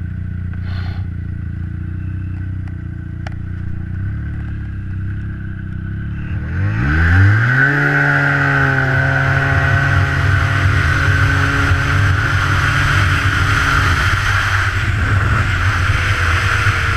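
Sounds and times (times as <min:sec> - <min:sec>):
outboard boat motor revving: 0:05.7 - 0:16.9.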